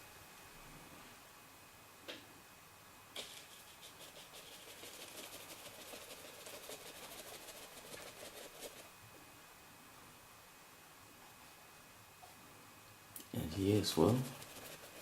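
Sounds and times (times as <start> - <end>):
paintbrush strokes on board: 3.2 - 8.9, 13.9 - 15.0.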